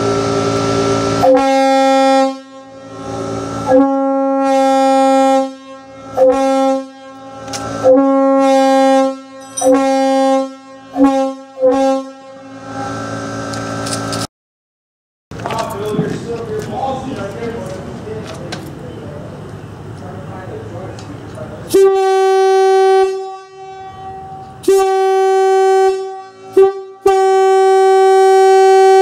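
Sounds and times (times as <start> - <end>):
locomotive air horn blasts: 0.0 - 13.8, 21.7 - 29.0.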